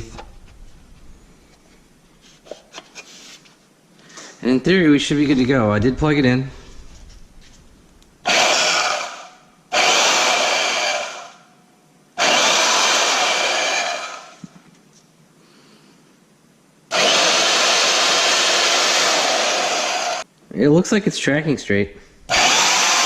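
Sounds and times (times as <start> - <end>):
portable bandsaw running: 8.3 - 11.3, 12.2 - 14.4, 16.9 - 20.2, 22.3 - 23.0.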